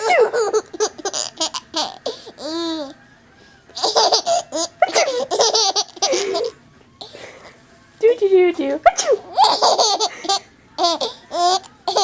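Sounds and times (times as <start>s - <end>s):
baby laughing: 0.0s - 3.0s, 3.8s - 6.6s, 8.9s - 12.0s.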